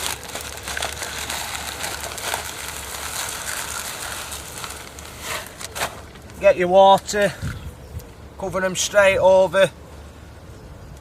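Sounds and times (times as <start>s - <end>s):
pellets poured into container: 0.0s - 6.0s.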